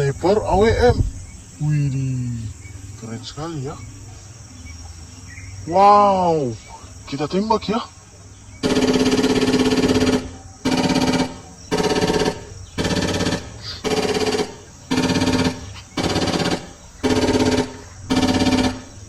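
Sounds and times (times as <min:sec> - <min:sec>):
electronic toy gun firing: 0:08.6 - 0:19.0.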